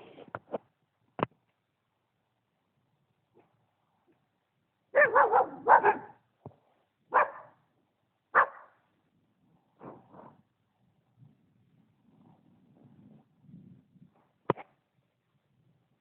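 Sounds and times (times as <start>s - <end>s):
dog barking: 4.9s - 6.2s, 7.1s - 7.6s, 8.3s - 8.8s.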